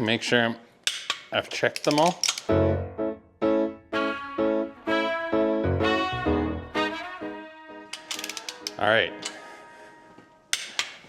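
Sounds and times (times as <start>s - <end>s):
brass background music: 2.5s - 10.3s.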